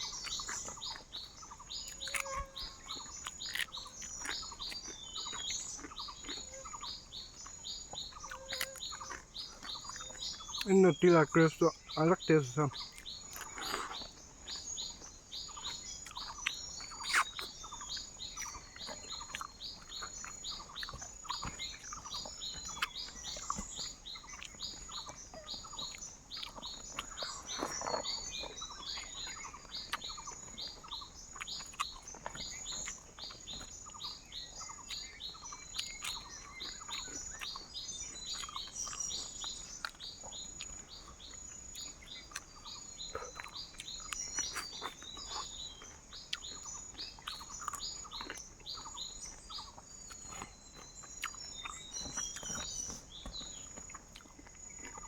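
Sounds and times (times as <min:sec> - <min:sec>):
birds calling in falling notes: 0:00.0 - 0:41.2.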